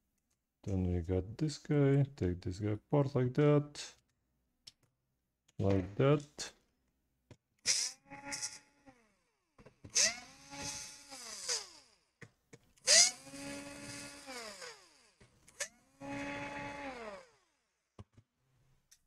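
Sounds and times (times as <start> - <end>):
electric screwdriver motor whine: 7.7 - 9.3, 9.9 - 12.1, 12.8 - 17.7.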